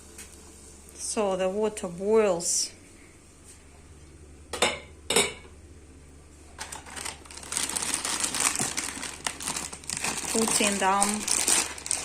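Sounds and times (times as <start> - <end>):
plastic package crinkling: 6.6 - 12.0.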